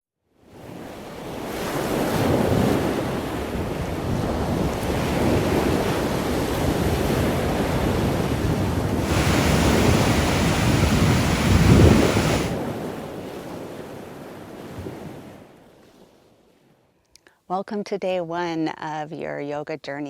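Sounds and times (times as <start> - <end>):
ocean surf washing ashore: 0.6 - 15.4
wind on microphone: 1.5 - 15.3.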